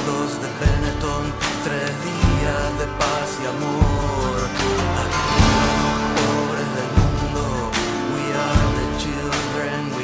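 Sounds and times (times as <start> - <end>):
sustained chords: 0.0 - 9.7
low kick drum: 0.7 - 1.2, 2.2 - 2.8, 3.8 - 4.5, 5.2 - 6.4, 7.0 - 7.9, 8.6 - 9.3.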